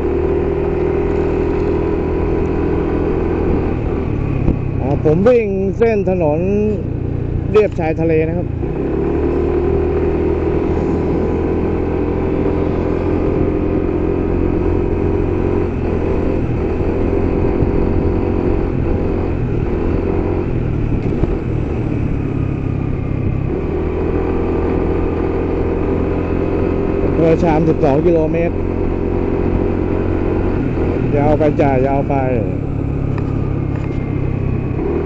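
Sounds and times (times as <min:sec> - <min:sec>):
vehicle engine driving: 0:00.0 - 0:35.0.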